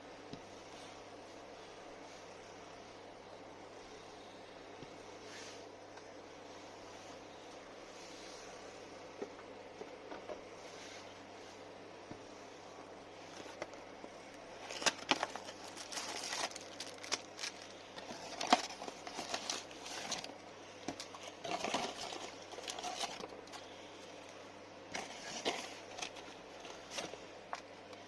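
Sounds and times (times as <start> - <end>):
faint low hum: 0.0 - 28.0.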